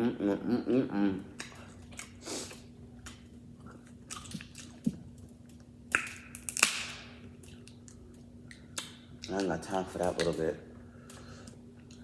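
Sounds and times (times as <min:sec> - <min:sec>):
faint steady hum: 0:00.0 - 0:12.0
wet chewing: 0:01.3 - 0:12.0
crunching shell: 0:05.9 - 0:08.1.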